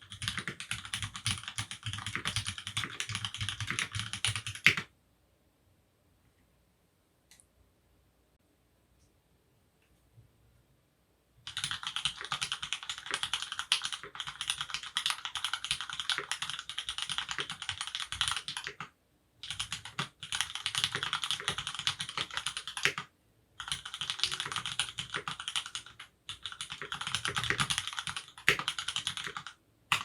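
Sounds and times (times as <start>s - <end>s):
fast typing on mechanical keyboard: 0.0s - 4.9s, 11.5s - 30.0s.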